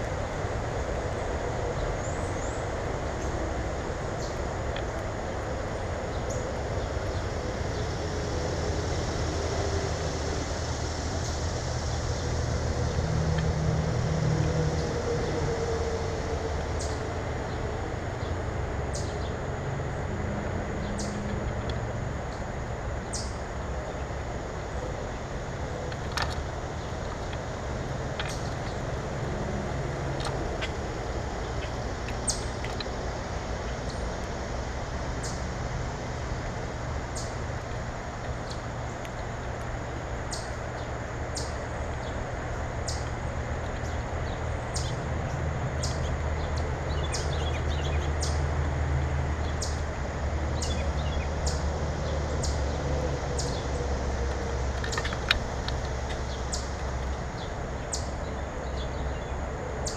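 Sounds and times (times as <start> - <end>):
low mechanical hum: 0.0 - 59.9
small birds chirping: 20.8 - 21.6, 24.8 - 34.2, 38.3 - 48.6, 49.2 - 59.9.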